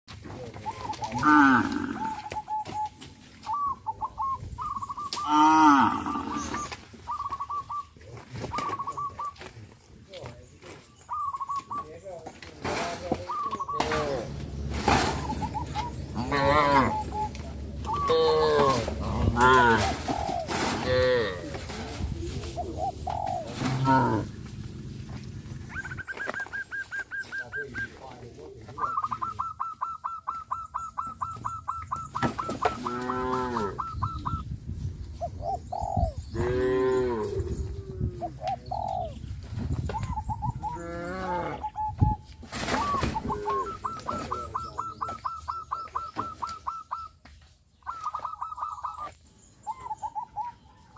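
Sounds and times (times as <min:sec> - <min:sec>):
cattle lowing: 0:00.8 - 0:02.4, 0:04.8 - 0:06.8, 0:13.9 - 0:26.1, 0:32.4 - 0:34.4
cattle mooing: 0:01.2 - 0:02.2, 0:05.2 - 0:06.6, 0:16.1 - 0:17.2, 0:18.0 - 0:19.9, 0:23.6 - 0:24.4, 0:32.8 - 0:33.8, 0:36.4 - 0:37.5
bird calling high notes: 0:13.3 - 0:20.8.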